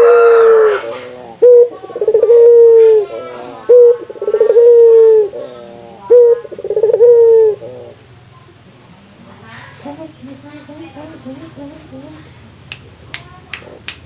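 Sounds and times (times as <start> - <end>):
dove cooing: 0.0 - 8.1.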